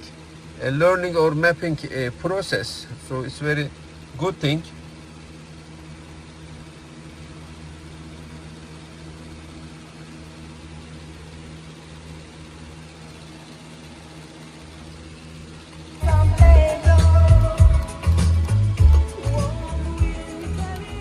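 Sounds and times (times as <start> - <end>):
car engine idling: 10.3 - 21.0.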